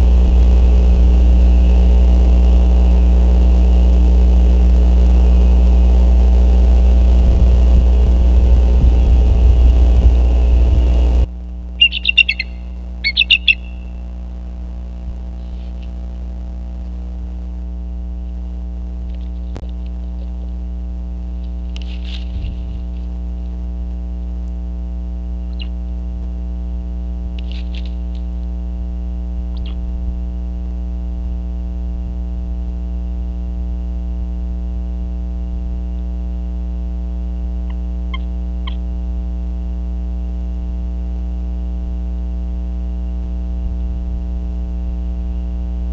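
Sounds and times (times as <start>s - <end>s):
electrical hum with high whine: 0.0s - 45.9s
faint bird calls: 11.8s - 14.0s, 25.5s - 25.8s, 29.5s - 29.8s.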